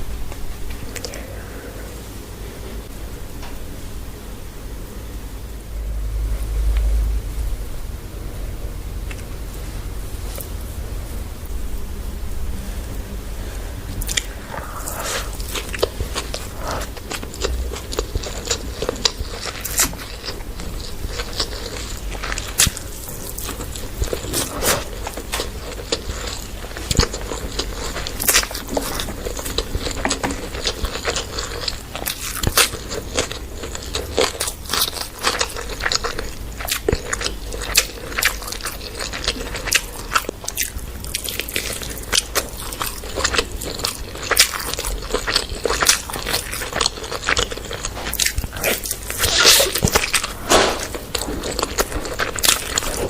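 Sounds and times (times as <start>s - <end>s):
person chewing and crunching: 14.0s - 53.0s.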